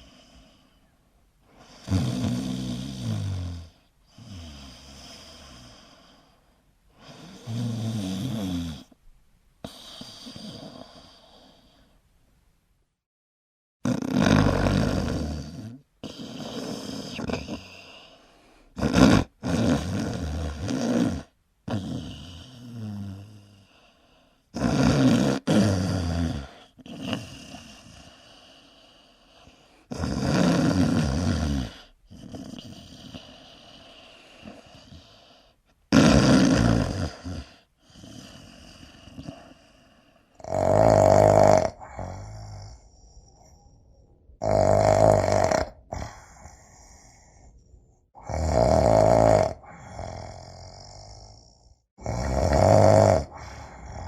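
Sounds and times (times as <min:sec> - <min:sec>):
quiet breaths: 0:00.0 - 0:12.6, 0:14.4 - 0:24.6, 0:25.4 - 0:35.9, 0:36.8 - 0:40.5, 0:41.2 - 0:44.4, 0:45.7 - 0:48.3, 0:49.4 - 0:54.0
loud rattling snores: 0:01.6 - 0:05.9, 0:07.1 - 0:08.9, 0:09.7 - 0:11.2, 0:13.8 - 0:18.0, 0:18.8 - 0:23.4, 0:24.5 - 0:28.4, 0:29.8 - 0:35.3, 0:35.9 - 0:43.5, 0:44.4 - 0:47.5, 0:48.1 - 0:54.0.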